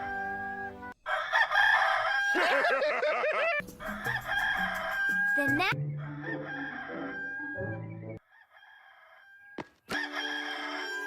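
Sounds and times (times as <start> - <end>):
background music: 0.0 - 1.0, 3.4 - 8.2
rooster crowing: 1.0 - 11.0.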